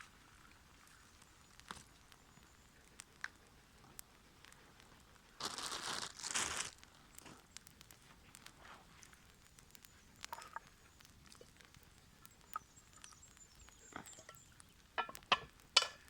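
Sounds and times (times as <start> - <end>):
twigs ticking and snapping: 0.0 - 16.0.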